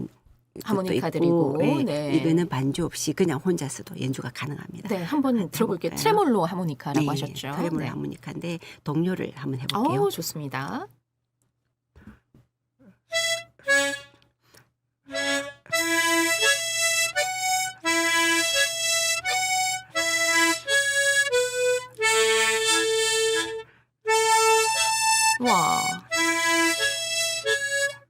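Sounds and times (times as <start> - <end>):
tremolo harmonica playing: 13.1 - 14.2, 15.1 - 28.0.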